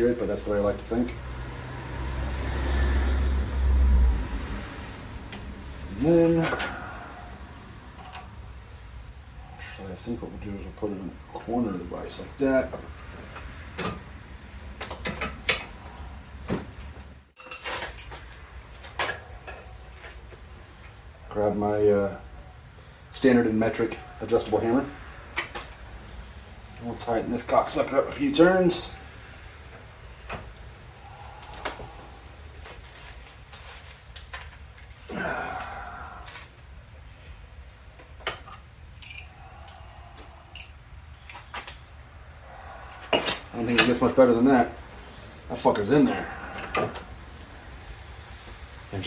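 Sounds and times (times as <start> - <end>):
metal tools clinking: 17.4 - 18.4, 38.2 - 39.8, 40.5 - 41.8, 42.9 - 44.2.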